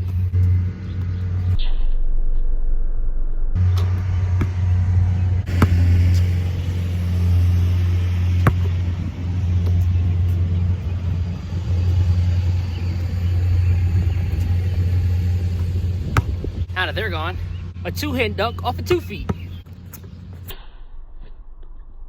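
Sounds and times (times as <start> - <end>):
steady low rumble: 0.0 - 22.0.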